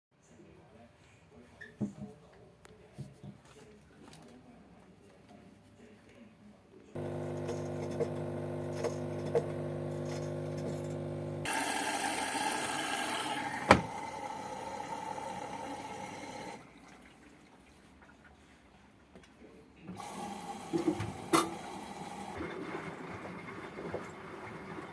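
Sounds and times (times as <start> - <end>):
washing machine drain pump: 7.0 - 17.8, 19.6 - 24.9.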